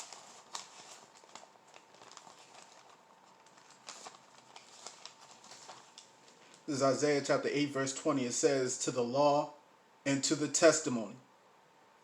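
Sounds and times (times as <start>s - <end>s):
soft handling clicks and rustles: 0.0s - 6.7s.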